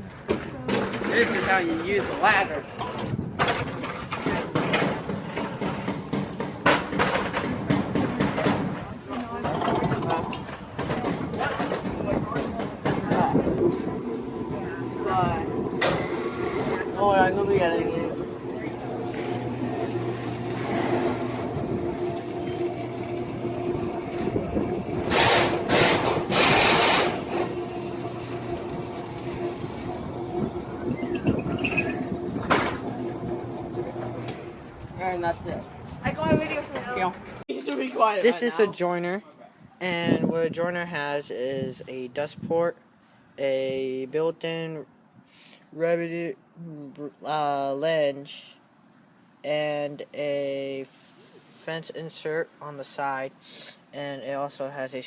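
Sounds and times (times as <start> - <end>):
irregular knocks and clattering: 0.3 - 13.9
woodshop machinery humming: 12.8 - 34.8
loud rushing noise bursts: 13.0 - 22.0, 23.4 - 27.6.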